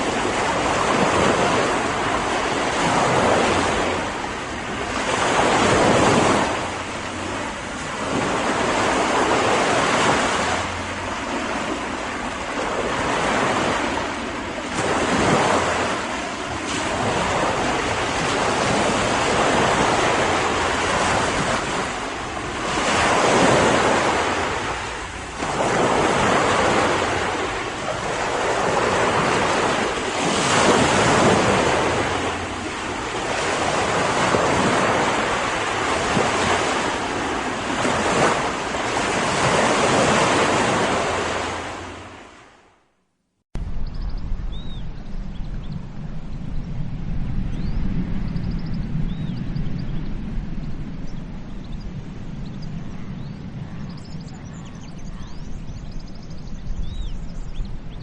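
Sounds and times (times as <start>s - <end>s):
ocean waves breaking on beach: 0.0s - 42.8s
wind: 0.0s - 58.0s.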